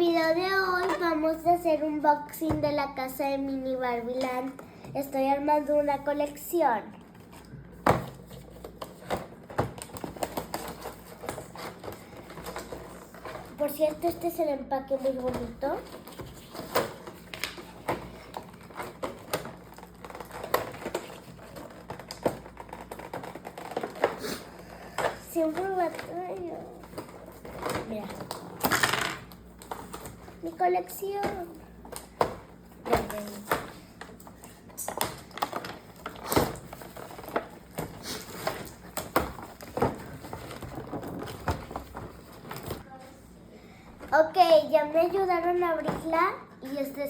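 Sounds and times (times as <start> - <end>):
packaging being handled and opened: 6.9 - 14.3, 14.9 - 42.8.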